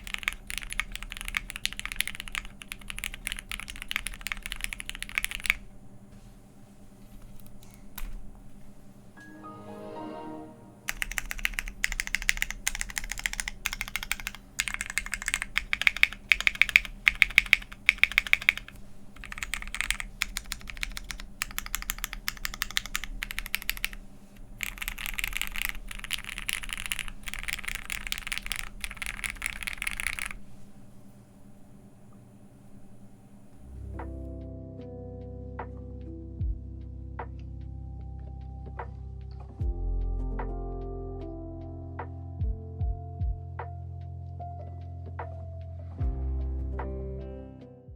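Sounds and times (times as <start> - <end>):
typing on mechanical keyboard: 0.0 - 5.7, 10.9 - 30.4.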